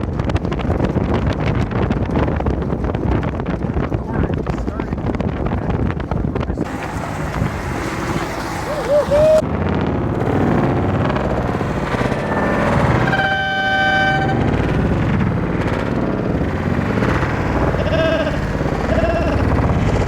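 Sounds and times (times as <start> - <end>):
wind buffeting microphone: 0.0 - 20.0
air horn blast: 11.5 - 15.2.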